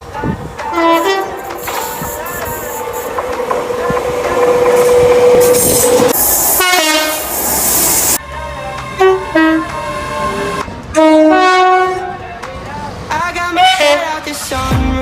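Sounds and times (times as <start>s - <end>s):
train passing: 0.0s - 14.7s
train horn blast: 0.7s - 7.4s, 8.9s - 12.2s
two-note train horn toots: 4.2s - 7.3s, 9.0s - 12.1s.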